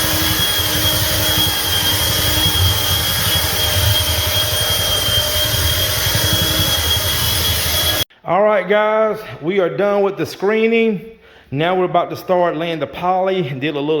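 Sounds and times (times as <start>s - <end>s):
floor buffer whine and drone: 0.0s - 8.0s.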